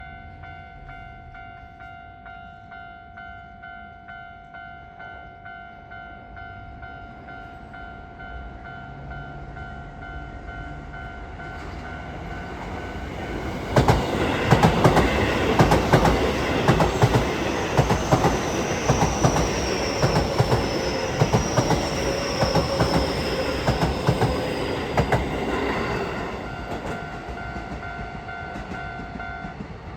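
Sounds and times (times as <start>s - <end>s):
train wheels clattering: 11.6s - 29.9s
train motor whine: 13.2s - 27.0s.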